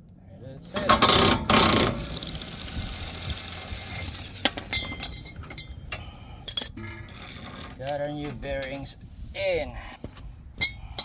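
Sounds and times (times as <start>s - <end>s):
metal tools clinking together: 3.9s - 5.8s, 6.4s - 8.8s.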